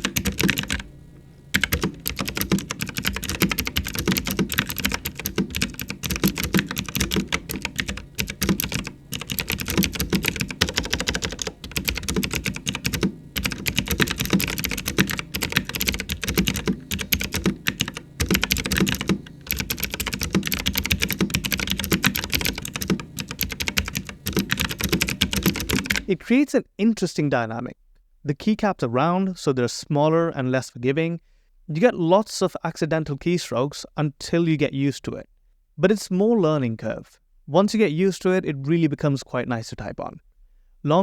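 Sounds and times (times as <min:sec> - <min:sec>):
fast typing on mechanical keyboard: 0:00.0 - 0:00.9, 0:01.5 - 0:26.1.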